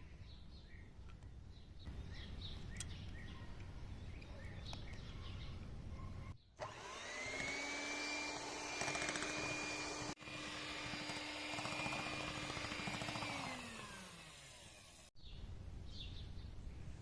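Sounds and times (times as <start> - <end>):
bird chirps: 0.0 - 6.6
electric hand mixer whine: 6.6 - 15.1.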